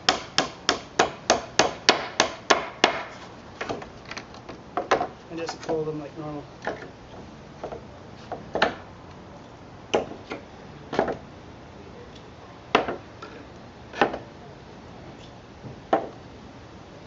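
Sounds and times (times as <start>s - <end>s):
hammer knocking on nails: 0.1s - 3.8s.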